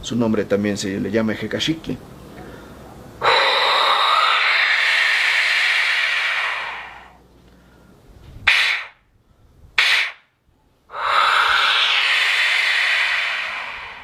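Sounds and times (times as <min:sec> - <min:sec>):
clay whistle screaming blasts: 0:03.2 - 0:07.1, 0:08.5 - 0:09.0, 0:10.9 - 0:14.0.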